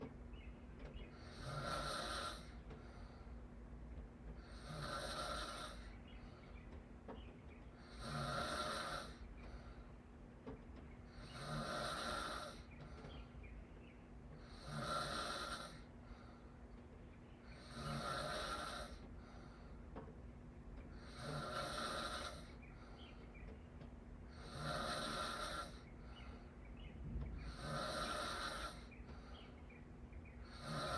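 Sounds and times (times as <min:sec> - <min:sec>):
person snoring breathily: 0:01.2 - 0:03.2, 0:04.4 - 0:06.0, 0:07.8 - 0:09.2, 0:11.2 - 0:12.7, 0:14.4 - 0:15.9, 0:17.5 - 0:19.7, 0:21.0 - 0:22.6, 0:24.3 - 0:25.9, 0:27.4 - 0:29.0, 0:30.5 - 0:30.9.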